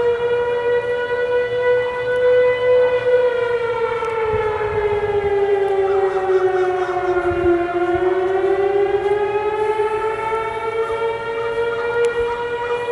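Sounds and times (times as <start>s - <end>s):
distant warning siren: 0.0s - 12.9s
second steady siren tone: 0.0s - 12.9s.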